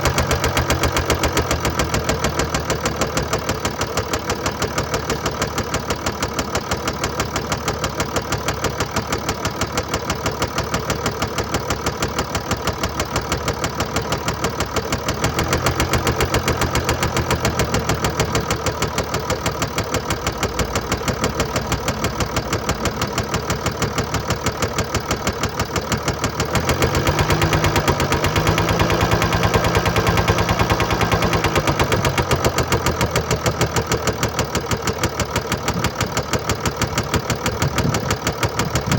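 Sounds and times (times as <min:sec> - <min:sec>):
diesel engine idling with knocking: 0:00.0 - 0:38.9.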